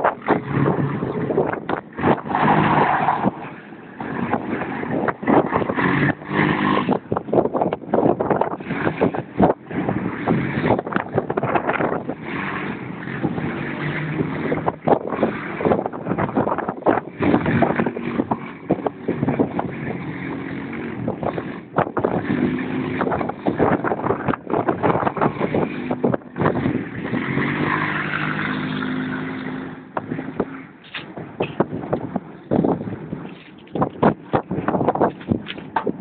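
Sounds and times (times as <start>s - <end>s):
wind buffeting microphone: 0.0s - 36.0s
quad bike engine revving: 4.1s - 31.6s.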